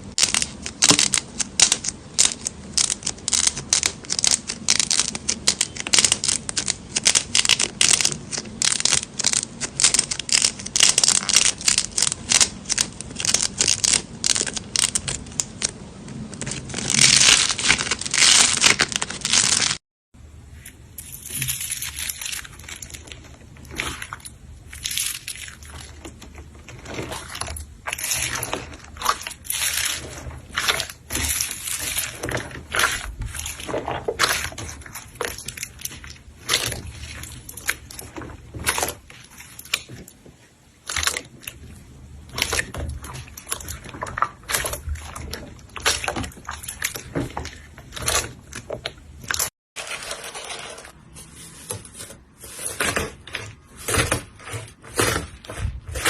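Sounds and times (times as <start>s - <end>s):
slime being squeezed: 21.1s - 49.5s.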